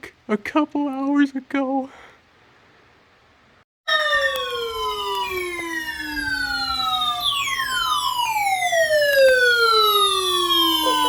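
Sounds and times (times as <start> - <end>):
falling siren-like tones: 3.9 - 11.0.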